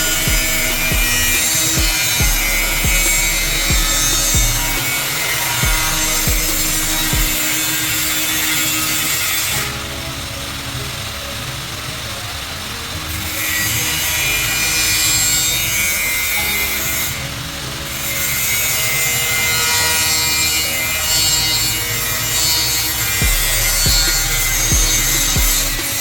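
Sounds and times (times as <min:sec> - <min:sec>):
tool scraping and hissing: 0:00.0 - 0:09.7, 0:17.9 - 0:26.0.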